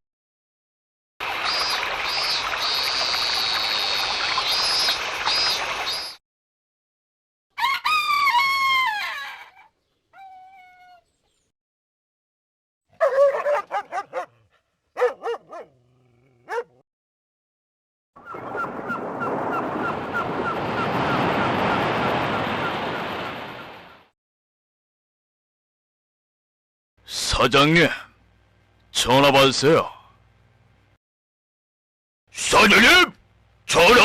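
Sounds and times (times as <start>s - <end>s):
dog-like whimpers and yips: 10.2s - 11.1s.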